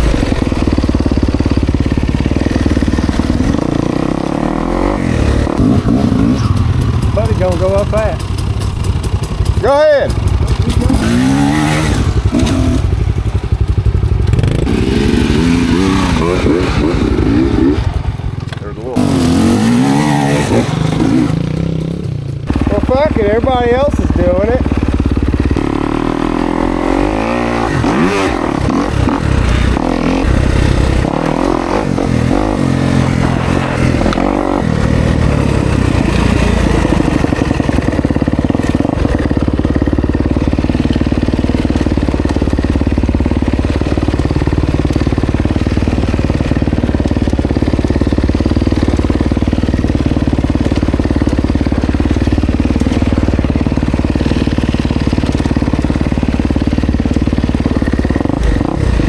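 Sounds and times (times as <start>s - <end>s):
dirt bike engine revving: 0.0s - 59.0s.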